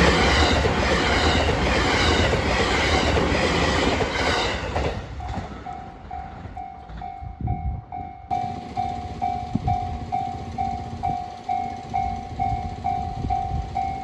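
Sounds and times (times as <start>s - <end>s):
train wheels clattering: 0.0s - 7.2s
crossing warning bell dinging: 0.0s - 14.0s.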